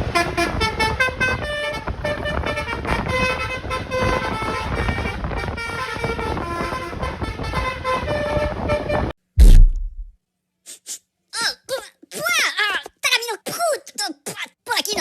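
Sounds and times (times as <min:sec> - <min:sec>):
multi-tone horn melody: 0:00.0 - 0:09.2
low rumble: 0:09.4 - 0:10.1
loud low thump: 0:09.4 - 0:10.2.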